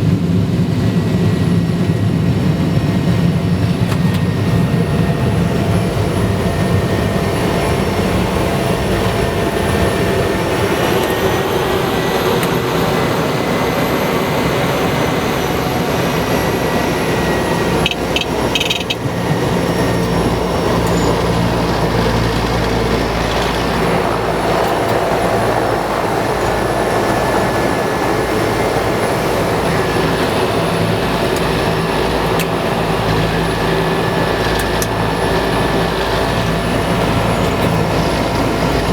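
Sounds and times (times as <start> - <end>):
high turbine whine: 0.0 - 38.9
turboprop engine drone: 0.0 - 38.9
clicks: 17.8 - 19.1.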